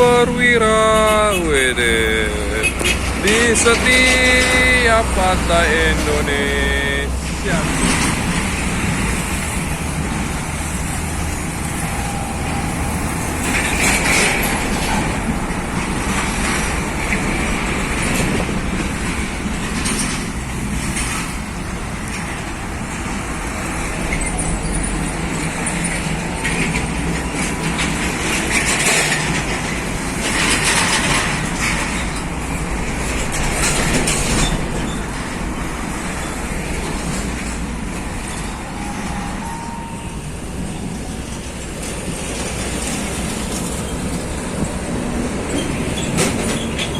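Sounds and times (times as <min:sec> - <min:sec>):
diesel trucks passing: 0:00.0 - 0:46.9
road noise: 0:00.0 - 0:46.9.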